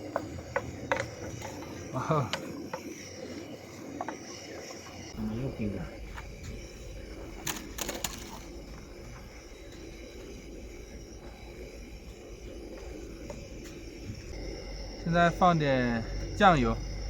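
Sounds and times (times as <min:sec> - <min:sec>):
gas stove burning: 0:00.0 - 0:17.0.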